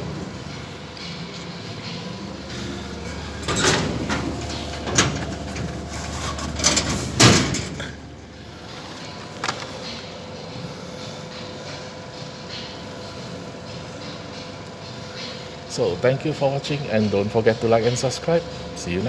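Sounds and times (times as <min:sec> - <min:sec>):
vending machine motor hum: 0:00.0 - 0:10.5
vending machine knocks and clunks: 0:03.1 - 0:08.0.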